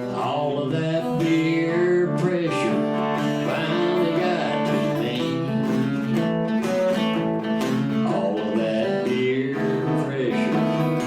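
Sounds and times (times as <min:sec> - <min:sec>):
acoustic guitar strumming: 0:00.0 - 0:11.0
man singing: 0:00.0 - 0:11.0.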